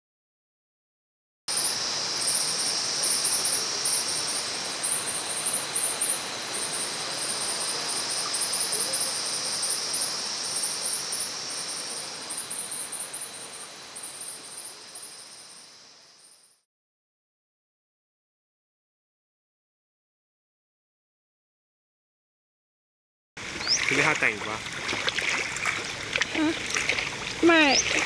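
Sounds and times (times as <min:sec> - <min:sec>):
insects chirping: 0:01.5 - 0:16.6, 0:23.4 - 0:28.0
steady high insect buzz: 0:01.5 - 0:16.6.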